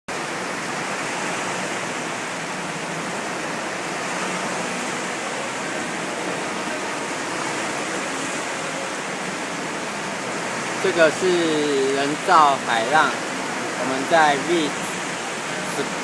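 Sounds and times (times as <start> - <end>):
wave pool water rushing: 0.1 - 16.0.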